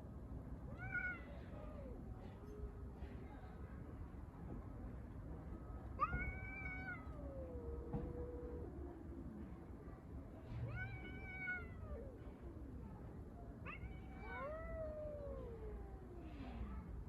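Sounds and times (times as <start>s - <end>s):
cats yowling: 0.7s - 2.0s, 6.0s - 9.5s, 10.5s - 12.8s, 13.6s - 16.8s.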